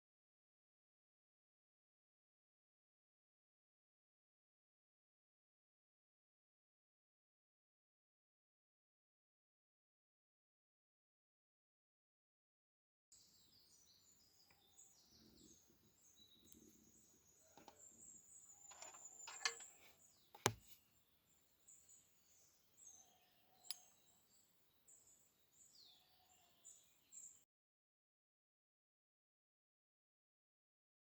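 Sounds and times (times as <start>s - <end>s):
sharp clicks and taps: 20.4s - 20.6s.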